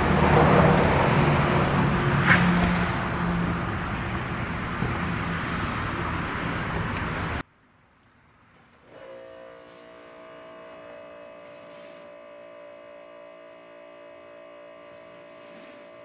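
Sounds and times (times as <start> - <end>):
pressure washer pump humming: 8.9 - 16.0.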